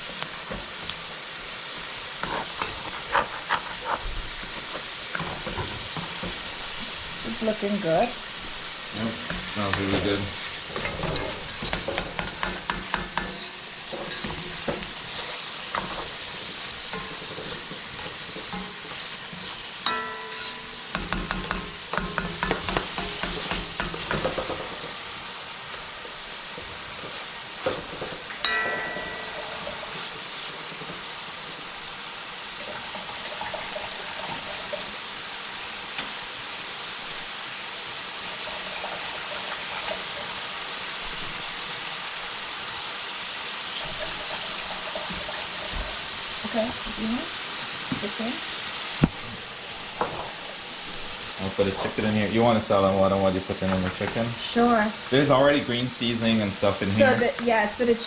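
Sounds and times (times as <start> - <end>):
food sizzling in hot oil: 0.0 - 58.0
spoon scraping pan: 0.1 - 7.5, 8.7 - 25.1
ringing metal clank: 19.8 - 21.0, 28.4 - 29.9.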